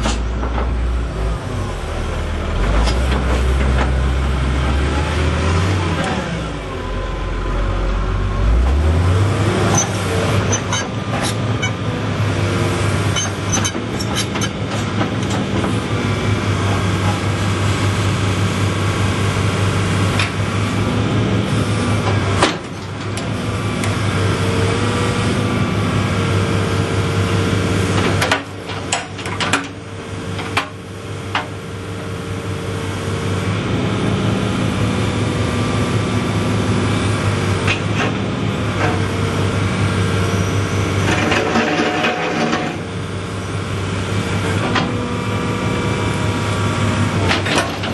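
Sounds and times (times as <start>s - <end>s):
hydraulic whine: 0.0s - 16.1s
excavator diesel engine: 0.0s - 47.9s.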